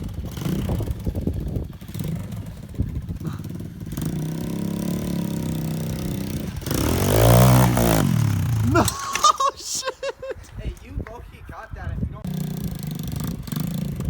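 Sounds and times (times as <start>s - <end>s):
moped engine running: 0.0s - 8.9s, 12.3s - 14.0s.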